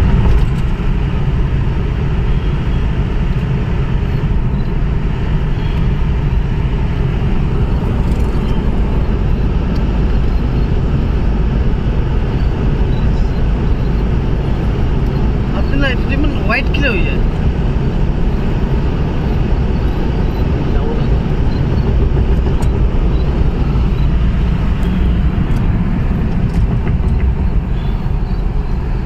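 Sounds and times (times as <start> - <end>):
road vehicle rumbling: 0.0 - 29.0.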